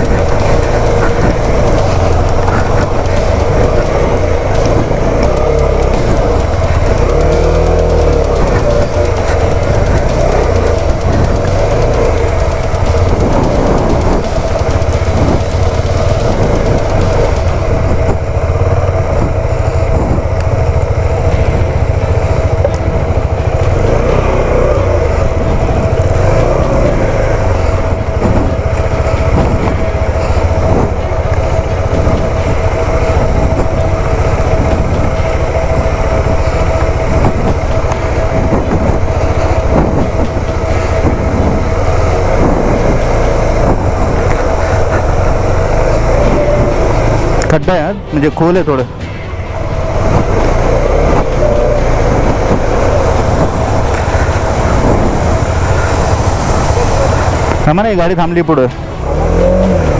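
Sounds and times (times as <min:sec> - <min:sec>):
motorcycle engine drone: 0:00.0 - 0:59.9.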